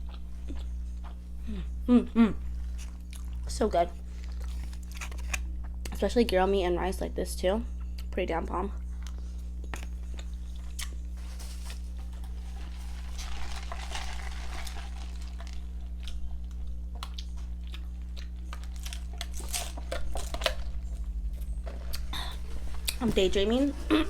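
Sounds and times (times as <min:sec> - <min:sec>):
steady low hum: 0:00.0 - 0:24.0
close chewing and biting: 0:02.5 - 0:06.0, 0:09.0 - 0:23.0.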